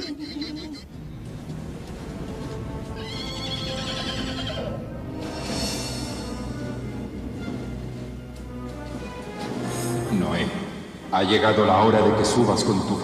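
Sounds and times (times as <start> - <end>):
background music: 0.0 - 13.0
horse whinnying: 2.8 - 5.5.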